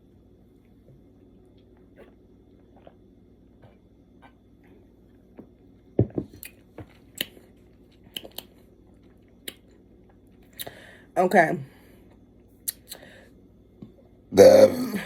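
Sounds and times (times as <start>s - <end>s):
faint sipping: 1.4s - 5.4s
sharp mouth clicks: 12.6s - 13.0s.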